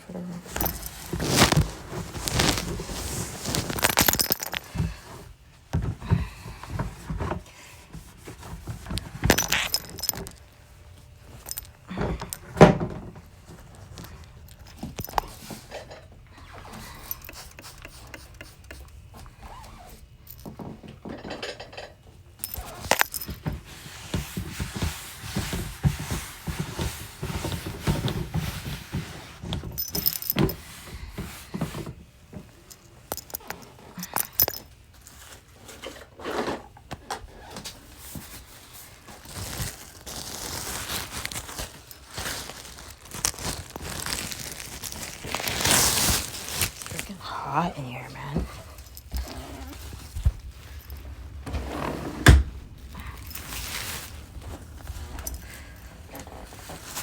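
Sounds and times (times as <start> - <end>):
objects clinking and scraping: 0.4 - 5.2, 8.9 - 10.6, 11.2 - 12.7, 13.5 - 18.8, 20.2 - 23.6, 27.6 - 31.8, 32.6 - 36.7, 39.2 - 52.0, 52.7 - 57.0.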